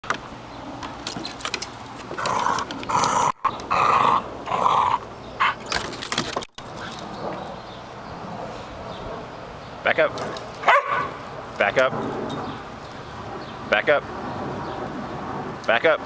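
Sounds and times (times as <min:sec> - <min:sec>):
dog growling: 0:02.1 - 0:05.6.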